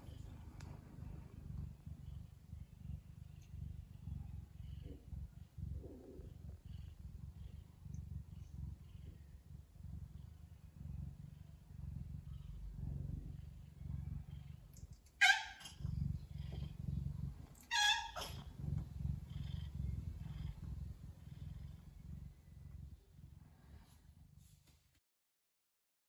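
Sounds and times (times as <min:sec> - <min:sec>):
cat purring: 0:00.0 - 0:24.6
loud cat meows: 0:15.2 - 0:15.7, 0:17.7 - 0:18.3.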